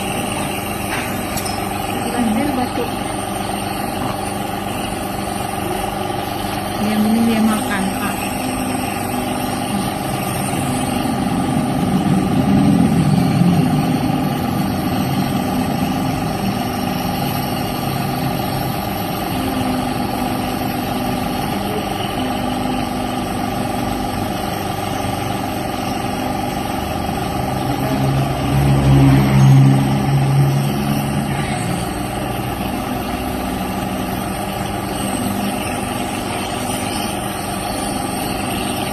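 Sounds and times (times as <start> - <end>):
nebulizer compressor humming: 0.0 - 38.9.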